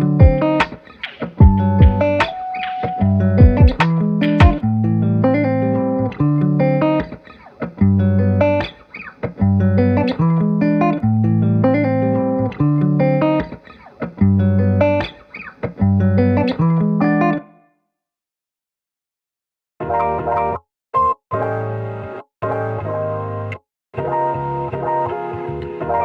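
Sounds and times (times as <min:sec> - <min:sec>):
bass notes: 0:00.0 - 0:00.6, 0:01.4 - 0:02.3, 0:03.0 - 0:06.6
plucked guitar melody: 0:00.0 - 0:17.6, 0:19.8 - 0:26.0.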